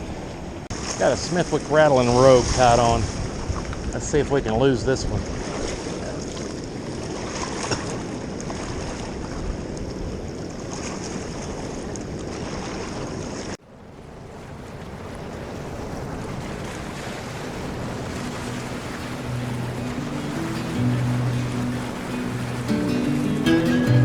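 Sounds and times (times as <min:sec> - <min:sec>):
wind noise on microphone: 0:02.0 - 0:12.1, 0:13.8 - 0:23.4
river water rushing: 0:11.0 - 0:24.0.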